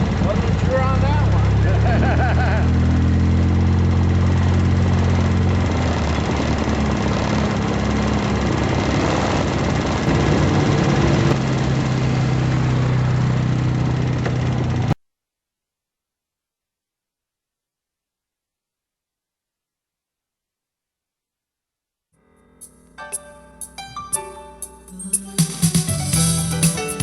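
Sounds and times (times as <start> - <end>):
atv engine running: 0.0 - 15.0.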